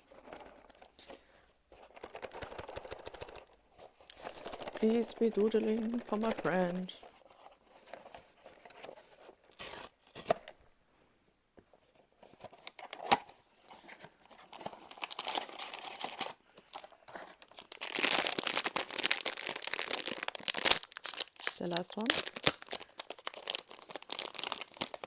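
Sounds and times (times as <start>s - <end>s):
packaging torn and crinkled: 14.5s - 25.0s.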